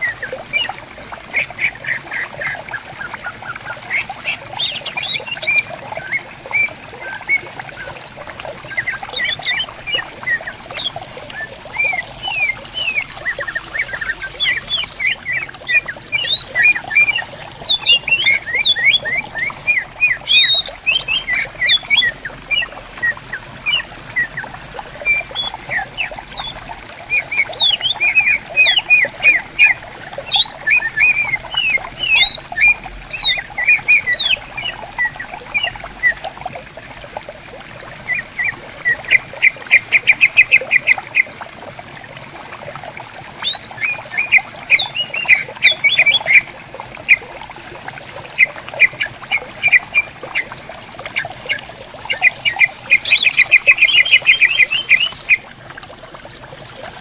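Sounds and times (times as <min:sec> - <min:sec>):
stream babbling: 0:00.0 - 0:57.0
birds chirping and whistling: 0:08.8 - 0:36.1, 0:43.4 - 0:46.4, 0:51.5 - 0:55.4.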